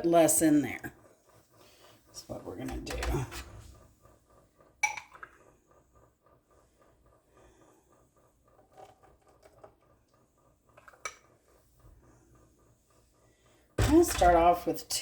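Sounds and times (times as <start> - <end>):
kitchenware clinking: 4.8 - 5.4, 10.8 - 11.3, 13.8 - 14.9.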